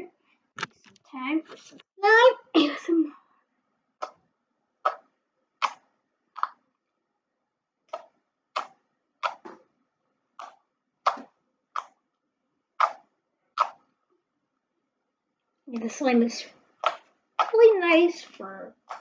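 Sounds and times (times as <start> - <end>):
slime squished with clicking pops: 12.8 - 13.0, 16.8 - 17.6.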